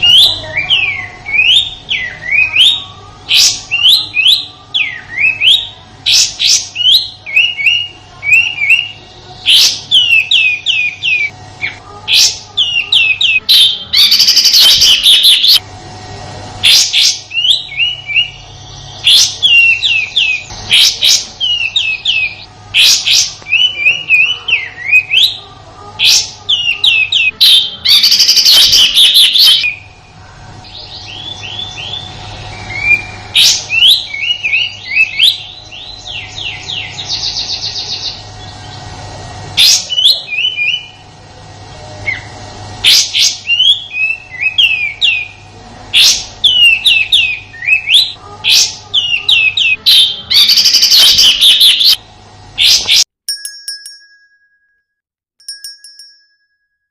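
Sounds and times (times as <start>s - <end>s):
songbird harsh rapid chirps: 26.0s - 29.8s.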